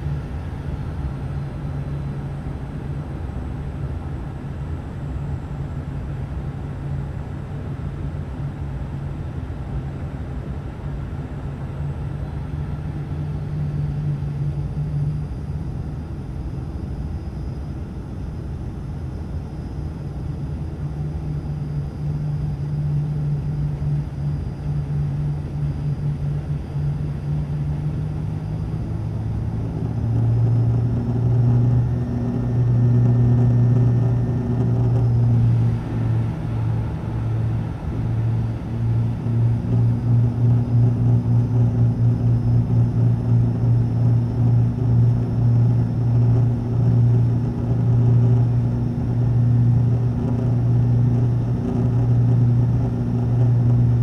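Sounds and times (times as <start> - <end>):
propeller hum: 24.1 - 54.0.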